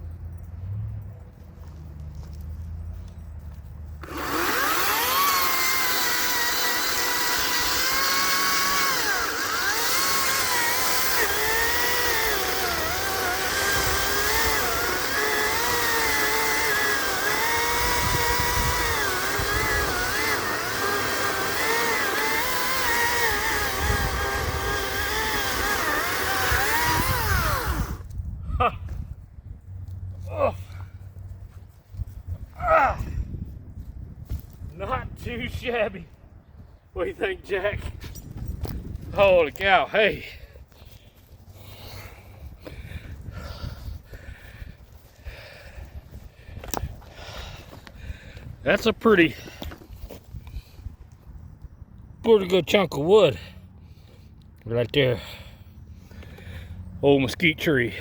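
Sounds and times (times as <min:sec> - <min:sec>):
chainsaw cutting wood: 0:04.0 - 0:28.2.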